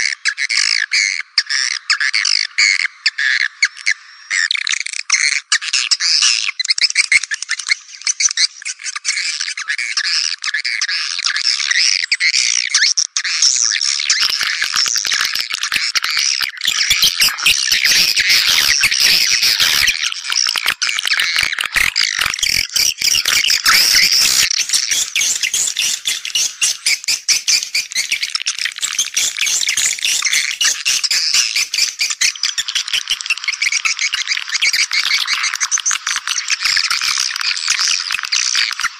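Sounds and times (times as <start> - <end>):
high twittering bird chirps: 13.6 - 38.9.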